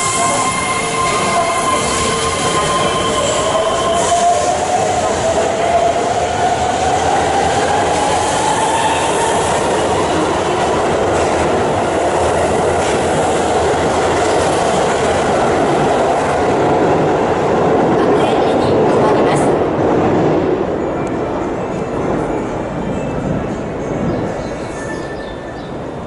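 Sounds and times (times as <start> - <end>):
train wheels clattering on rail: 6.5 - 21.2.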